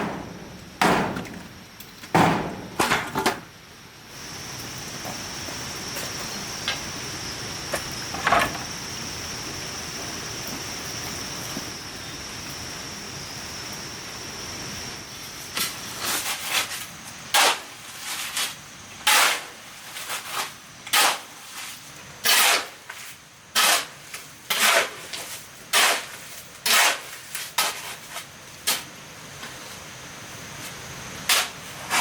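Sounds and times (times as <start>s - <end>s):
hard sharp blows: 0.0s - 3.1s
high-pitched hiss: 0.0s - 24.1s.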